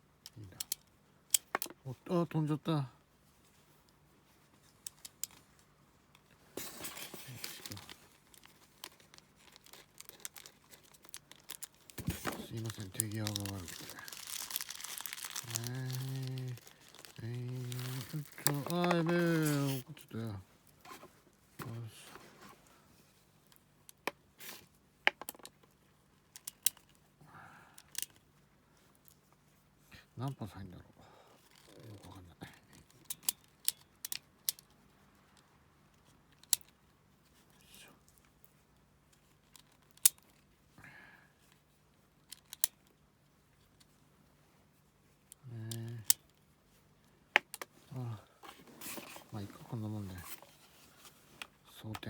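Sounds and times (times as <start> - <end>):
plastic crinkling: 6.8 - 20.0.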